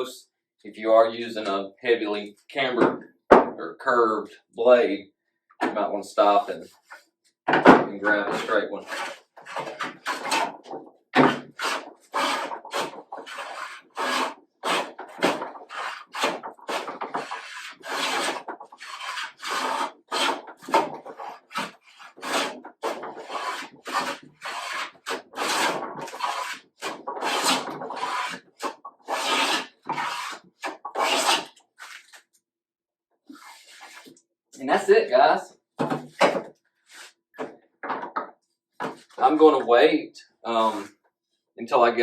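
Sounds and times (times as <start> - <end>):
hand plane swishing on wood: 8.3 - 10.5, 11.2 - 32.0.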